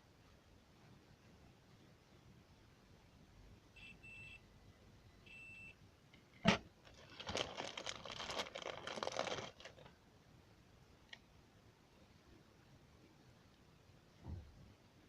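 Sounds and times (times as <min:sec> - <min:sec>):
faint high beeps: 0:03.7 - 0:04.5, 0:05.1 - 0:05.8.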